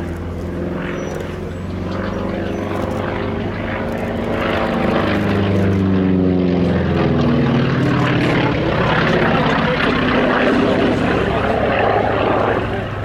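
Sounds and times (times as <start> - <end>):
propeller aircraft flying by: 0.0 - 13.0.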